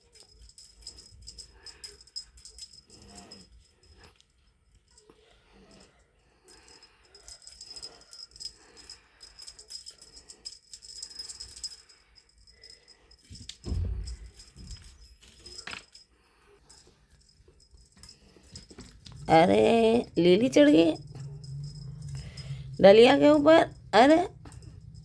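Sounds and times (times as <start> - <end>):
small bell jingling: 0.0 - 25.0
soft thump: 13.6 - 14.4.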